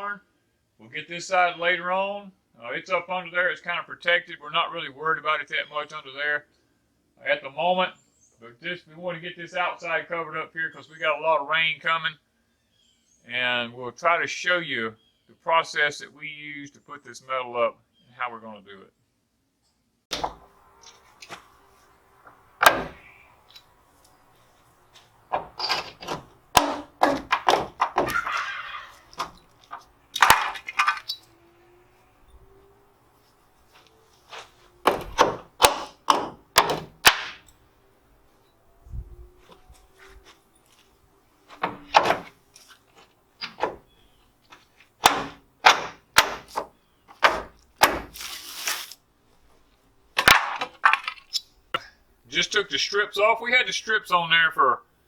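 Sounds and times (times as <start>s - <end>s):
wooden strips cracking: 20.1s - 31.3s, 33.7s - 37.6s, 41.5s - 49.6s, 50.2s - 51.5s
wooden knocks and clatters: 22.2s - 23.7s, 24.9s - 31.2s, 34.4s - 37.4s, 41.5s - 43.9s, 44.5s - 48.2s
rough rasping noise: 24.9s - 31.3s.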